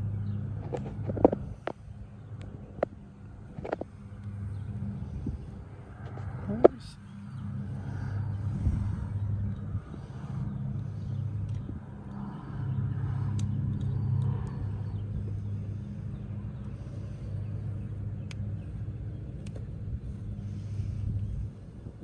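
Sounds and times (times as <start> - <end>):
vehicle engine idling: 0.0 - 22.0
light clicks: 11.3 - 12.4, 13.0 - 14.9, 17.8 - 19.8.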